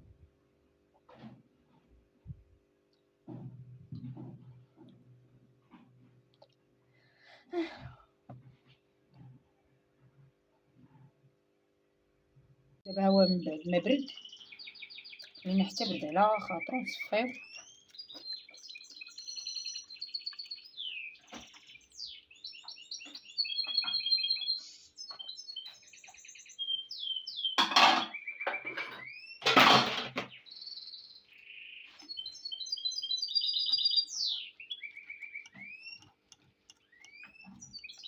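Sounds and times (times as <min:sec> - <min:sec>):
songbird chirping and trilling: 0:12.8 - 0:38.0.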